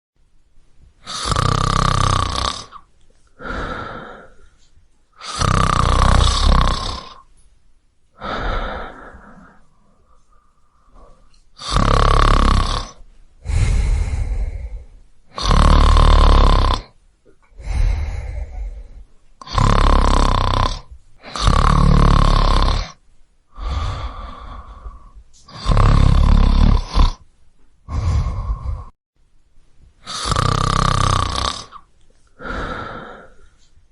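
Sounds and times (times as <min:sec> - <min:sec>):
man snoring loudly: 0:01.0 - 0:02.8, 0:05.2 - 0:07.2, 0:11.6 - 0:16.9, 0:19.4 - 0:23.0, 0:23.6 - 0:27.2, 0:30.0 - 0:31.8.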